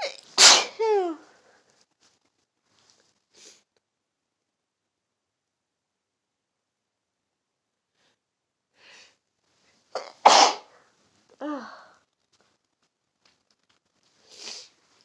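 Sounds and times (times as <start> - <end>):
person sneezing: 0.0 - 1.1, 10.0 - 10.8.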